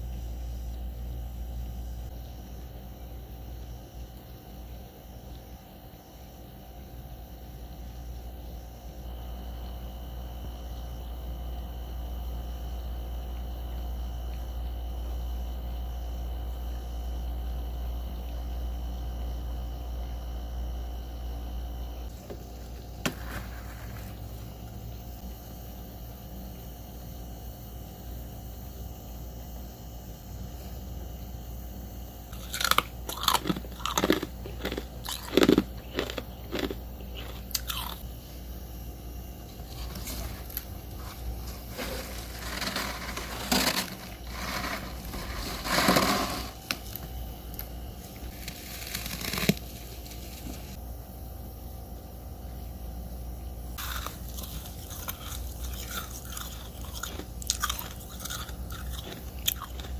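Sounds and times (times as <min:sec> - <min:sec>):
steady low hum: 0:00.0 - 0:59.9
crunching freezer frost: 0:22.0 - 0:25.4, 0:32.3 - 0:38.5, 0:39.3 - 0:50.8, 0:53.8 - 0:59.9.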